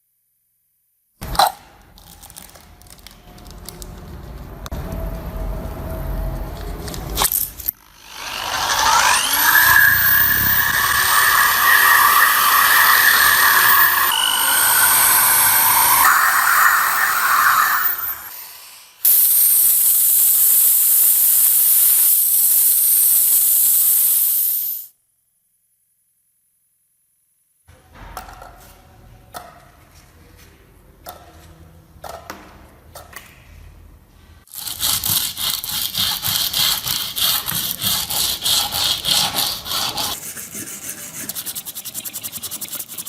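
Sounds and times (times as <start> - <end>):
electric power tool whining on metal: 7.8 - 18.8.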